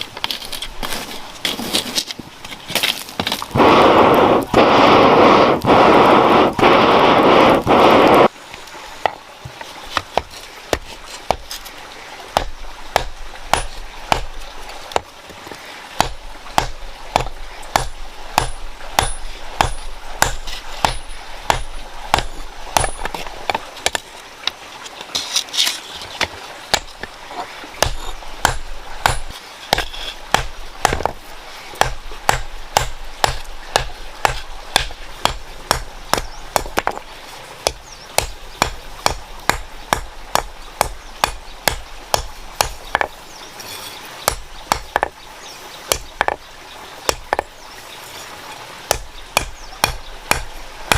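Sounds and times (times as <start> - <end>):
hammer striking iron: 16.0 - 24.0, 27.8 - 31.2, 31.8 - 37.0, 48.9 - 50.9.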